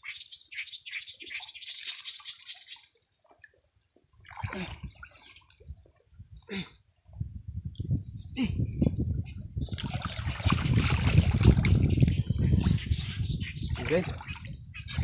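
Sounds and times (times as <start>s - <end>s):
muddy water splashing: 1.8s - 6.8s, 9.6s - 15.0s.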